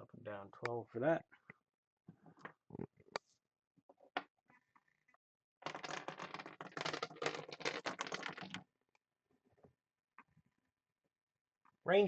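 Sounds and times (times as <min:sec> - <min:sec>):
chip clattering through pegs: 0:05.6 - 0:08.6.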